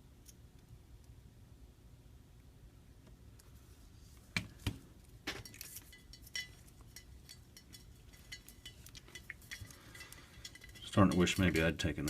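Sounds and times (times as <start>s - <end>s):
small tools clinking on metal and glass: 5.4s - 12.0s.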